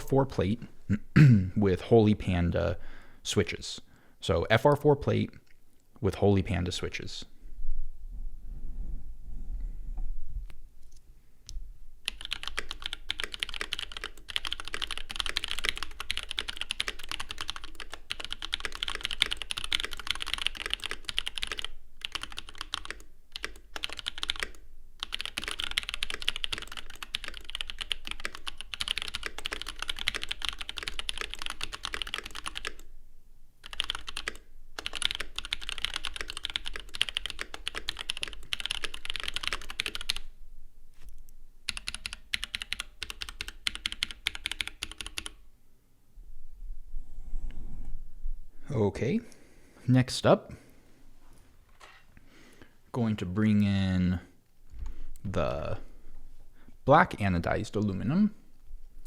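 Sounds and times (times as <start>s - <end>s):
typing on mechanical keyboard: 12.1s - 32.9s, 33.6s - 40.3s, 41.7s - 45.4s.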